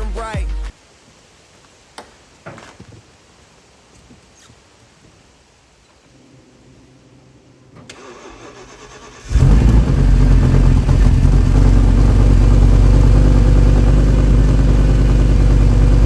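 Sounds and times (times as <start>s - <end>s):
car engine cranking and idling: 7.6s - 16.0s.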